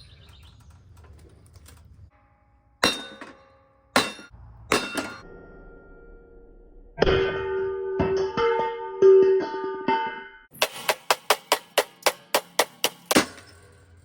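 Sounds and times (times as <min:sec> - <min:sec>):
hammer striking metal: 0:02.8 - 0:06.1, 0:10.5 - 0:14.0.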